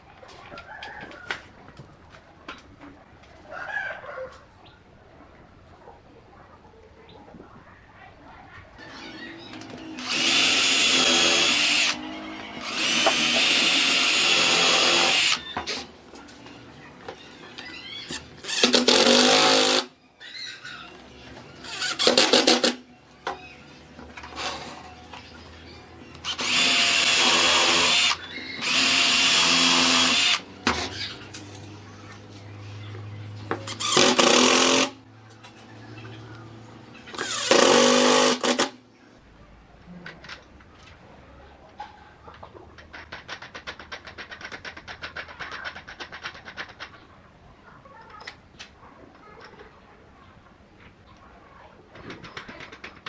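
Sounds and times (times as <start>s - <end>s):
power tool motor whining: 8.8s - 15.9s, 17.6s - 19.9s, 26.2s - 35.0s, 35.7s - 38.8s.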